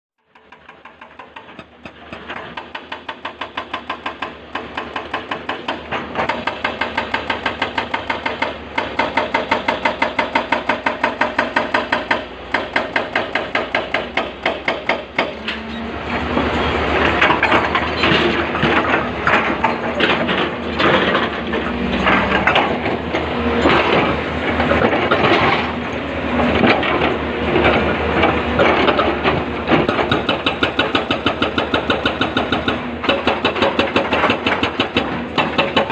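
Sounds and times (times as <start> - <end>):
excavator working: 0.2 - 35.9
rapid train of knocks: 0.4 - 15.3, 26.4 - 35.9.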